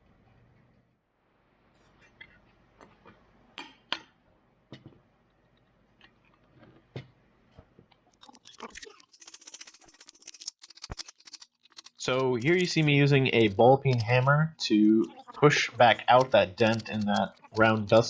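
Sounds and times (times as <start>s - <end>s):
fast ticking clicks: 8.3s - 18.0s.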